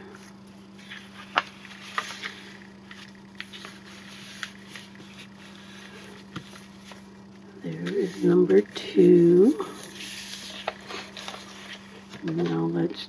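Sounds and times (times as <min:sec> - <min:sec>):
steady low hum: 0:00.0 - 0:13.0
paper tapping and rustling: 0:06.2 - 0:07.0.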